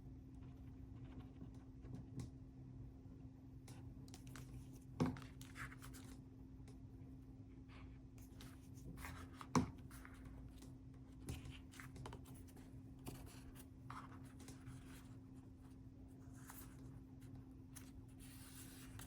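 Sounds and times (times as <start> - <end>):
paper rustling and tapping: 8.2 - 15.1.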